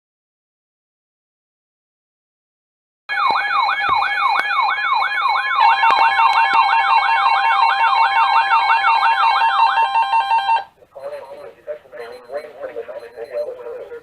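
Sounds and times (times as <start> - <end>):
electronic siren falling sweep: 3.1 - 10.7
two-pitch siren warble: 3.1 - 10.7
steady siren tones: 3.1 - 11.3.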